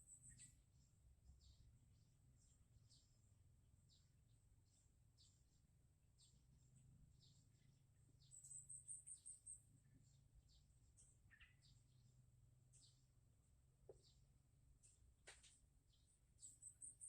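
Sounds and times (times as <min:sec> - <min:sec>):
bird trill: 0:00.0 - 0:03.2, 0:03.8 - 0:13.1, 0:15.9 - 0:17.0
high bird chirps: 0:08.2 - 0:12.0.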